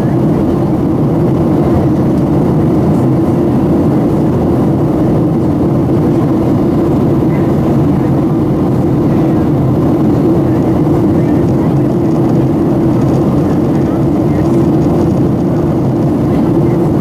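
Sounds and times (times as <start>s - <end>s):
airplane cabin jet engine noise: 0.0s - 17.0s.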